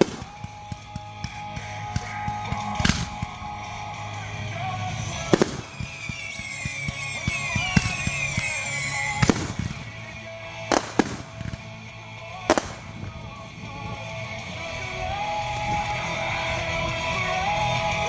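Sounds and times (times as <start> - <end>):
fireworks crackling pops: 0.0 - 14.4
fireworks sharp bangs: 0.0 - 18.0
music playing: 0.0 - 18.0.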